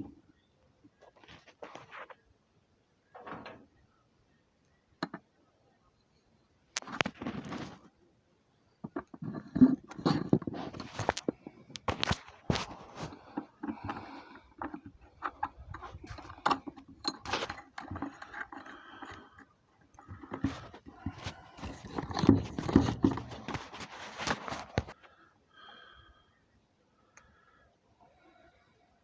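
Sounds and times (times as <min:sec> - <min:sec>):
knocks clicks and scraping: 0:08.8 - 0:25.0.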